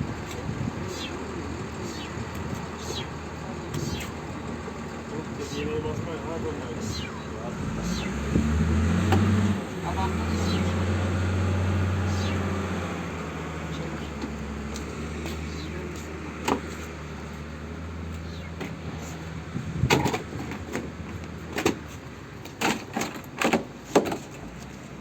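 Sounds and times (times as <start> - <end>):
sharp knocks and clanks: 8.3 - 9.4, 16.4 - 16.8, 19.9 - 21.9, 22.5 - 24.4.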